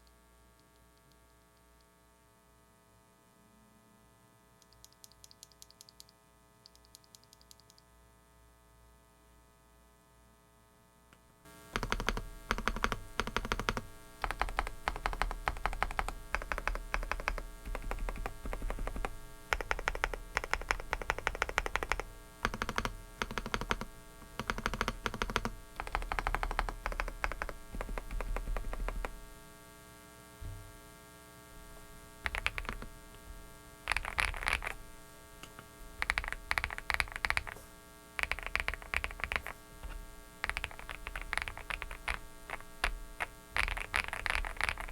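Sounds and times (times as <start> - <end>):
electrical hum: 11.4 - 44.9
mechanical keyboard typing: 11.8 - 29.2, 32.2 - 32.9, 33.9 - 34.8, 35.5 - 37.6, 38.2 - 44.9.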